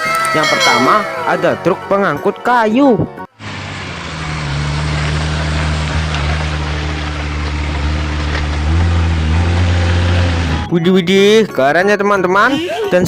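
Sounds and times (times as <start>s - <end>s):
large truck engine humming: 3.3s - 10.8s.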